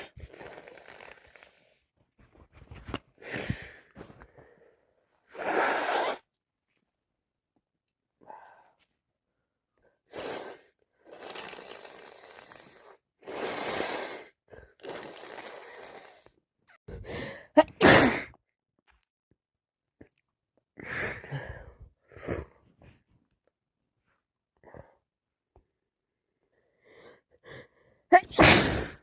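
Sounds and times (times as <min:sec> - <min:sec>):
person gasping breaths: 0:16.9 - 0:17.5, 0:20.8 - 0:22.6
loud wet sneeze: 0:17.6 - 0:18.4, 0:28.2 - 0:29.0.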